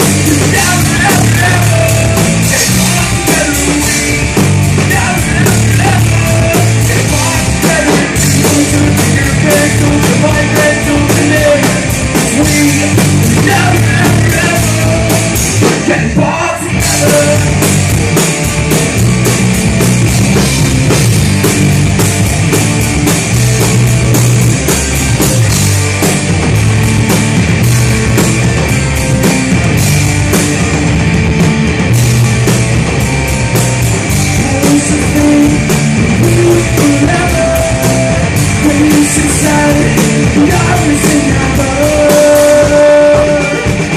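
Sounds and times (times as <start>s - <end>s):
person singing: 0.0s - 17.7s, 34.3s - 43.9s
driving drum kit: 0.0s - 43.9s
rock band playing loud: 0.0s - 43.9s.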